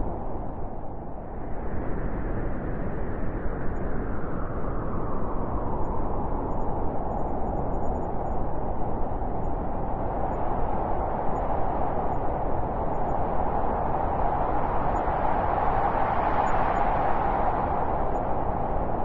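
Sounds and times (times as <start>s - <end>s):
blizzard wind blowing: 0.0s - 19.0s.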